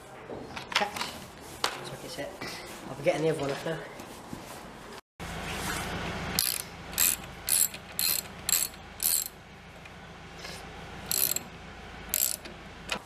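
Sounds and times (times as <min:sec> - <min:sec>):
ratchet wrench clicking: 0:06.4 - 0:09.4, 0:11.1 - 0:11.5, 0:12.1 - 0:13.0.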